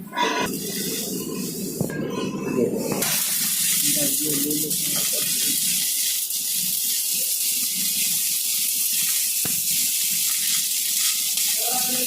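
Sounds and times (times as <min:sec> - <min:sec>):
welding arc hissing: 0:00.0 - 0:01.9, 0:02.7 - 0:12.0.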